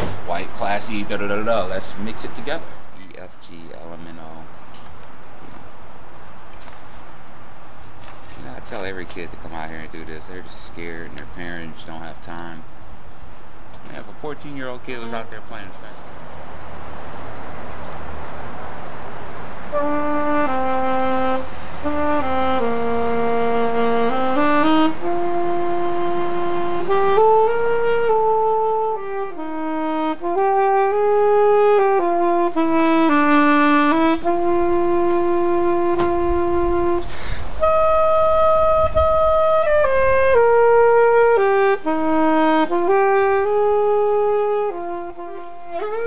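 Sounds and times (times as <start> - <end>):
solo saxophone melody: 14.5 - 15.8, 19.6 - 46.0.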